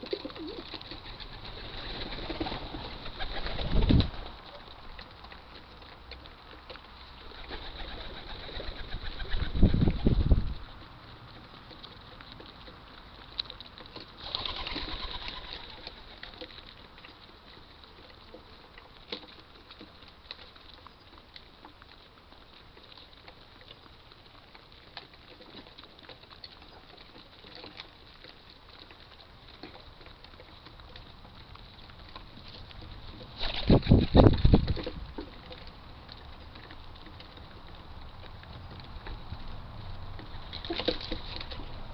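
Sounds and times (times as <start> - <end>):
pigeon wings flapping: 0.0 - 4.6, 7.3 - 10.5, 14.2 - 16.4, 33.2 - 35.0.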